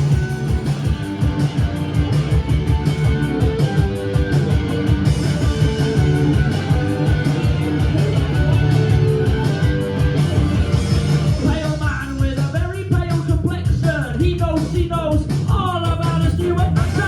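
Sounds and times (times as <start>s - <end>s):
electric guitars: 0.0s - 12.4s
bass guitar: 0.0s - 17.0s
drum kit fast beat: 0.0s - 17.0s.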